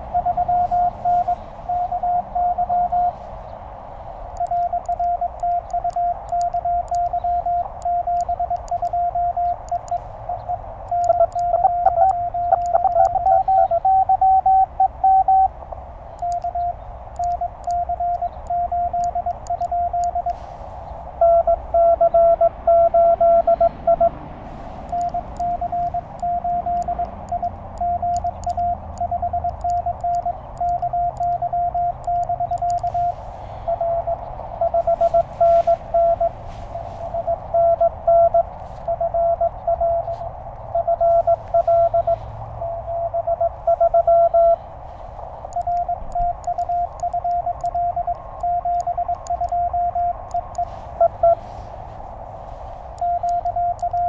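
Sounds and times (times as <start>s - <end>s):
morse code tones: 0.0s - 54.0s
paddle key clicks: 4.3s - 13.4s.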